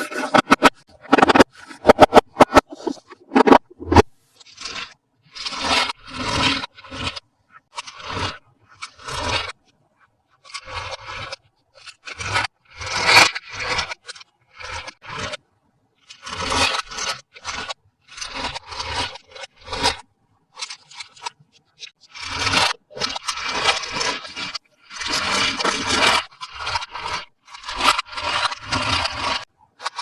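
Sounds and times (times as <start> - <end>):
packaging scraping and rubbing: 0.0 - 9.6, 20.6 - 30.0.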